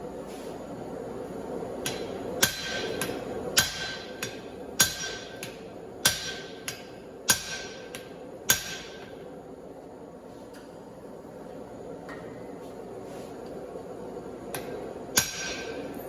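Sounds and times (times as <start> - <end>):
hammer striking steel on anvil: 1.8 - 9.1, 14.5 - 16.0.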